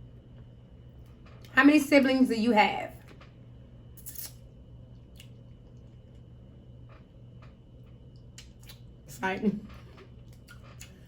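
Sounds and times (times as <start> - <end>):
steady low hum: 0.0 - 11.0
soft chewing: 4.0 - 6.4, 7.0 - 9.0, 9.8 - 11.0.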